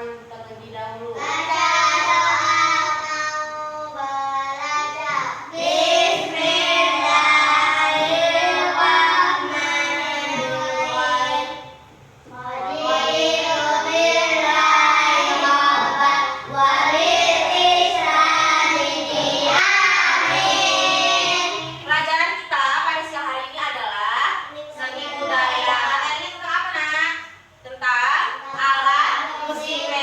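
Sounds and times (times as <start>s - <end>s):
children singing: 1.2s - 21.9s, 29.2s - 30.0s.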